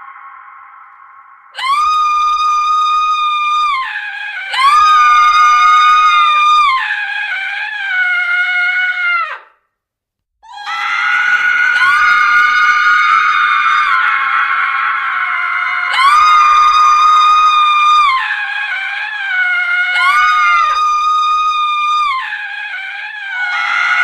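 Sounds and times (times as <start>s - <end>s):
woman screaming: 1.6s - 9.5s, 10.4s - 24.0s.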